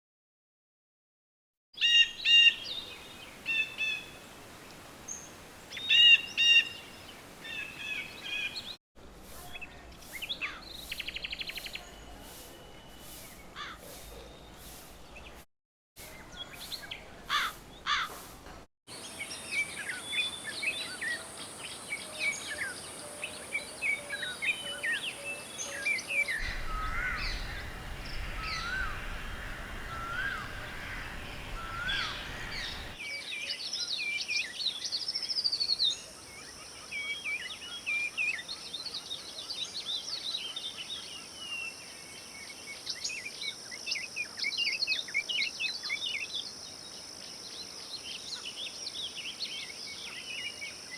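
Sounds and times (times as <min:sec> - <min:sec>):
small birds chirping: 0:09.5 - 0:15.4, 0:16.0 - 0:41.3
repeated rising bird call: 0:23.7 - 0:33.0
steady high hiss: 0:26.2 - 0:33.0
low rumble: 0:26.4 - 0:33.0.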